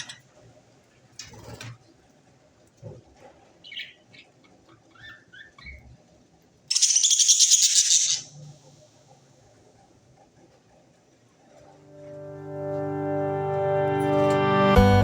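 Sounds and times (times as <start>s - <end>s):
budgerigars chirping: 3.6s - 5.9s, 6.7s - 8.4s
budgerigar raspy chatter: 6.7s - 8.4s.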